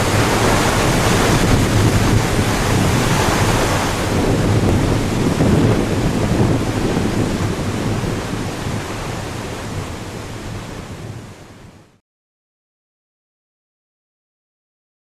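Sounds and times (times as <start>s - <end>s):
waterfall rushing: 0.0s - 11.4s.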